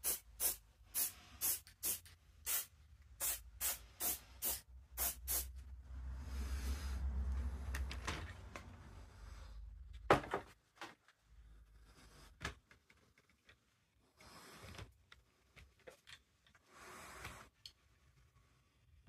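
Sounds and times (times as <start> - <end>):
spray paint can hissing: 0.0 - 5.5.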